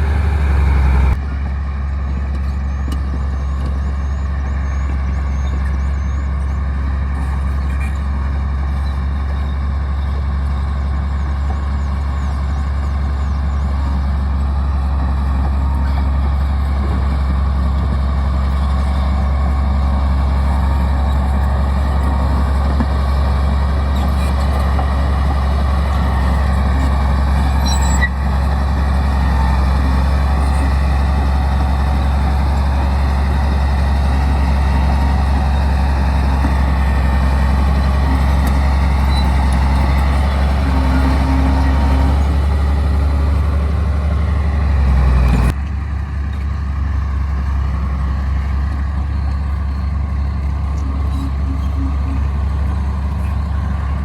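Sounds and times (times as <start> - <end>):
bulldozer diesel engine humming: 0.0 - 54.0.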